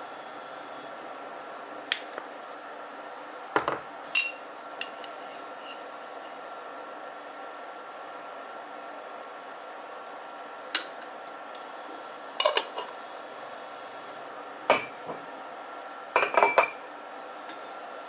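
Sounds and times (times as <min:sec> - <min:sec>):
steady background hum: 0:00.0 - 0:18.0
dishes and utensils clattering: 0:03.6 - 0:04.4, 0:12.4 - 0:12.9, 0:16.2 - 0:16.8.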